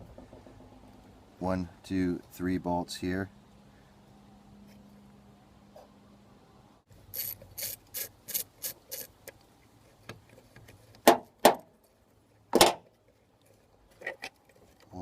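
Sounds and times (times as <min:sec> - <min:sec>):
ratchet wrench clicking: 0:07.1 - 0:09.1.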